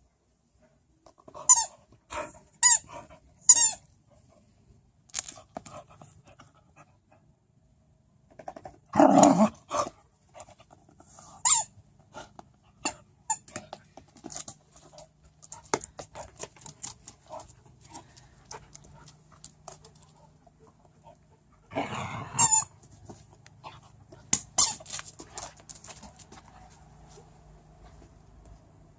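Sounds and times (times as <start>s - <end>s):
squeaky dog toy squeaking: 1.4s - 1.8s, 2.6s - 2.9s, 3.5s - 3.8s, 11.4s - 11.7s, 22.4s - 22.7s, 24.6s - 25.0s.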